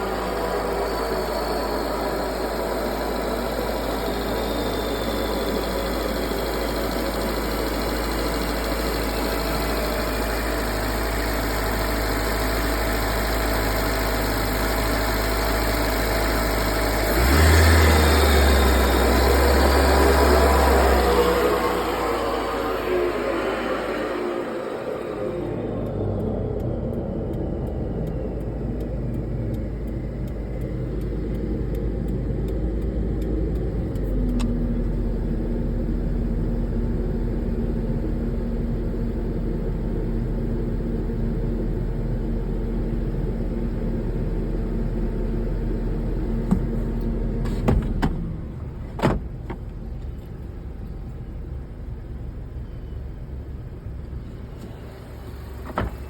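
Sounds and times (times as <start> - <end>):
steady tone: 0.0 - 13.7, 18.2 - 34.1
car engine droning: 0.0 - 56.0.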